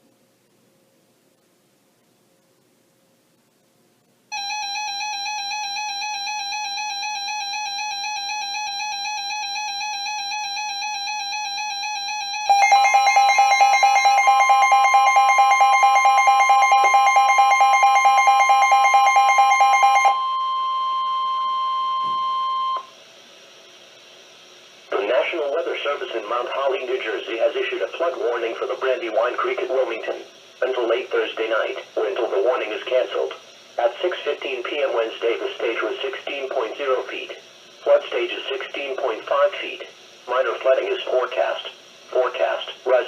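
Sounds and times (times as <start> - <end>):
warbling radio alarm: 4.3 - 22.9
steady alert tone: 12.4 - 20.6.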